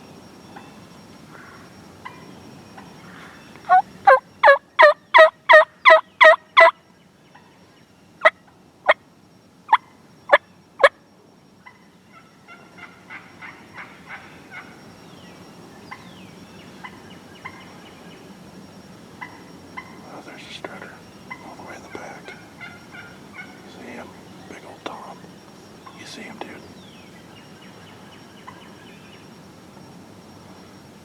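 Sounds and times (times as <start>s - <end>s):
turkey clucking: 3.6s - 6.7s, 19.2s - 20.0s, 21.3s - 25.2s
turkey yelping: 3.7s - 6.7s, 11.6s - 14.8s, 22.3s - 23.8s.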